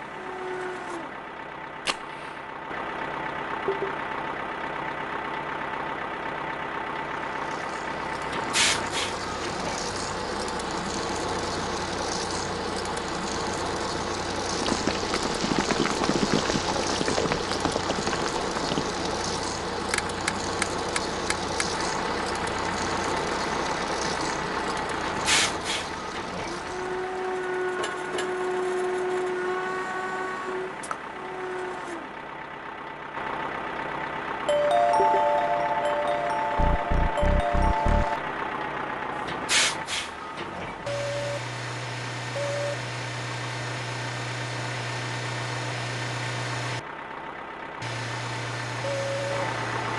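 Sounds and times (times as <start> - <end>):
truck engine rumble: 0.0 - 49.9
air-brake hisses: 8.5 - 9.2, 25.2 - 26.0, 39.4 - 40.2
held tones: 34.5 - 38.4.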